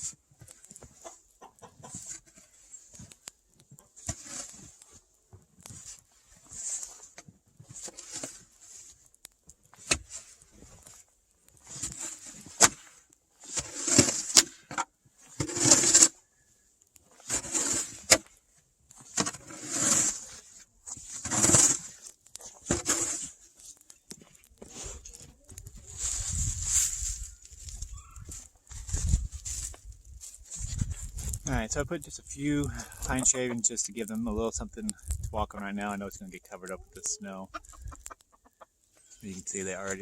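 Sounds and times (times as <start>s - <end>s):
crunching scraping strokes in snow: 5.7s - 9.1s, 11.6s - 16.2s, 17.1s - 18.3s, 19.0s - 35.1s.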